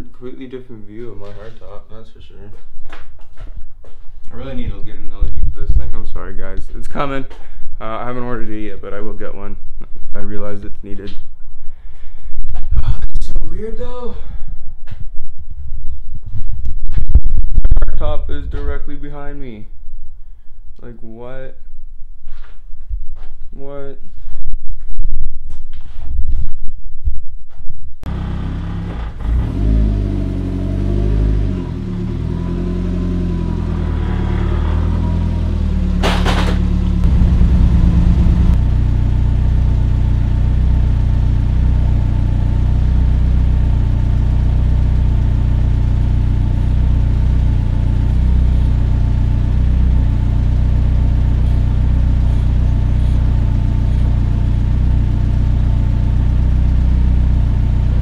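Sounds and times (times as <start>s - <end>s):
car engine idling: 28.1s - 29.7s, 30.3s - 58.0s
sharp clunk: 36.0s - 36.9s.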